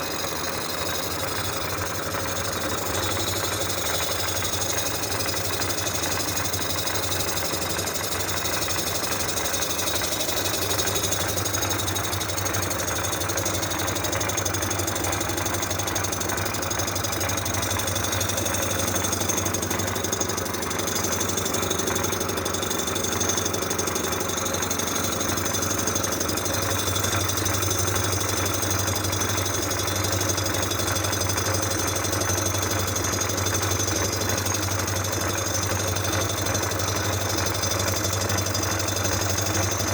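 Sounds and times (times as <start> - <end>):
surfacing machine running: 0.0 - 39.9.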